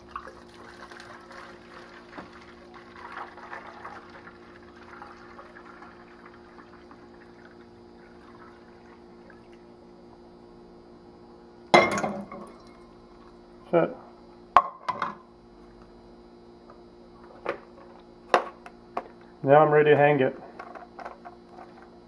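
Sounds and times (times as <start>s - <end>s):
liquid trickling through funnel: 0.0s - 9.7s
steady electrical hum: 0.0s - 22.0s.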